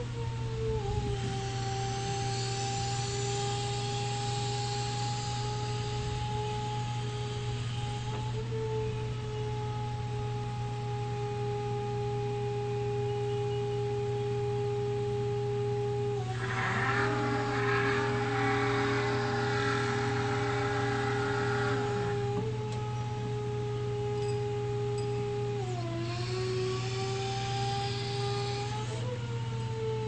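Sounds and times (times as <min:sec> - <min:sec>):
electric truck whine: 0:00.0 - 0:30.0
low hum: 0:15.0 - 0:27.0
rattly machinery: 0:16.3 - 0:22.8.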